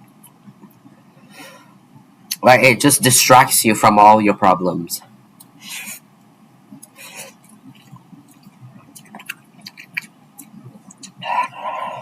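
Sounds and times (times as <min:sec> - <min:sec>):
hissing breaths: 0:06.8 - 0:07.5, 0:11.1 - 0:12.0
person chewing noodles: 0:06.8 - 0:12.0
wet mouth clicks: 0:07.7 - 0:11.2.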